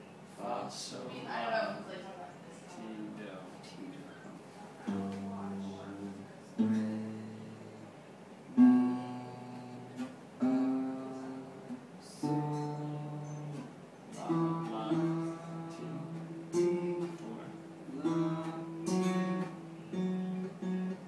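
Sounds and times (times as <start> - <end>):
acoustic guitar strummed chords: 4.8 - 21.0.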